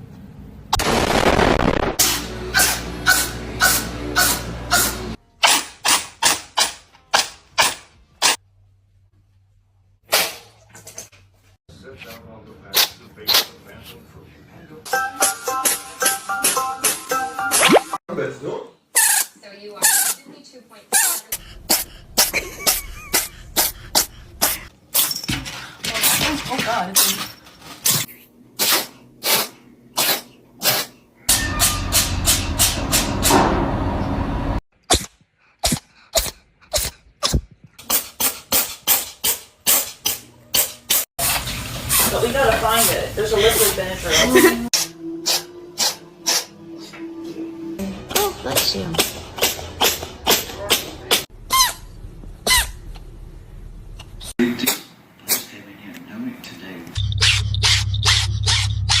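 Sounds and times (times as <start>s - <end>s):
cat sneezing: 28.6s - 31.0s, 44.8s - 46.5s.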